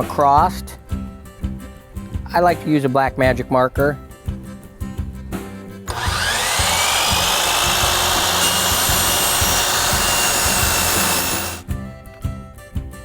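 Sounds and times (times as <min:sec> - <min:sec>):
electric miter saw motor whine: 0:05.9 - 0:11.6.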